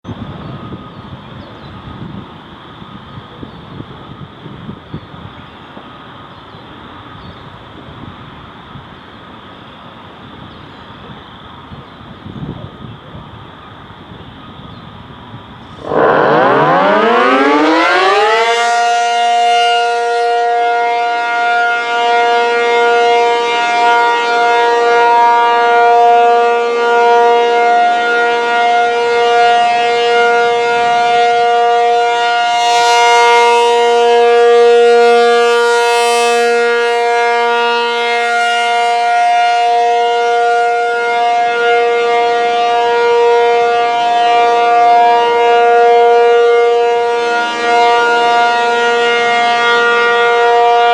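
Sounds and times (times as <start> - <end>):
warning siren wailing: 15.7 - 50.9.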